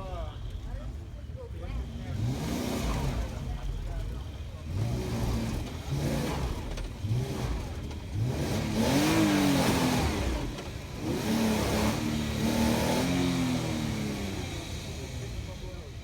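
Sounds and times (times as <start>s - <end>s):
car engine revving: 4.7s - 15.1s.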